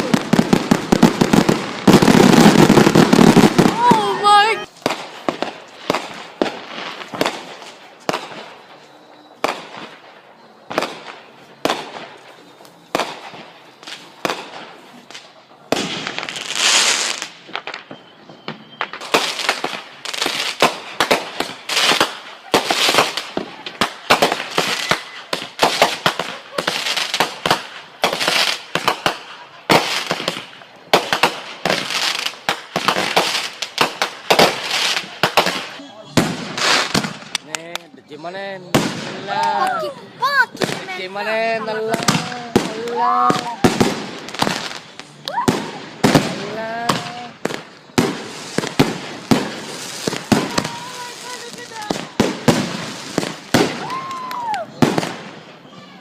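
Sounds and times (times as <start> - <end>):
fireworks hissing: 0.0 - 10.0, 10.7 - 56.0
fireworks banging and crackling: 0.0 - 56.0.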